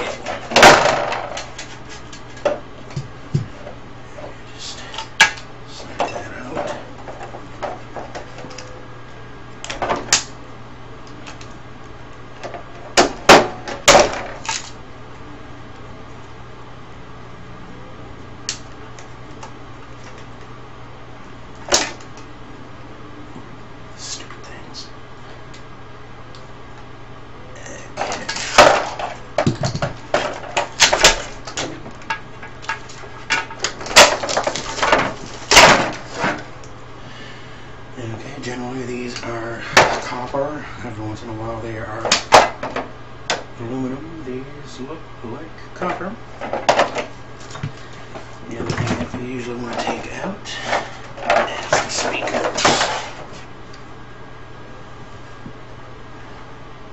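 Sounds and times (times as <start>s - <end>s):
tv parts clattering: 0.0s - 4.3s, 4.9s - 8.8s, 12.4s - 14.8s, 28.0s - 36.7s, 39.0s - 40.5s, 41.8s - 43.5s, 45.8s - 53.5s.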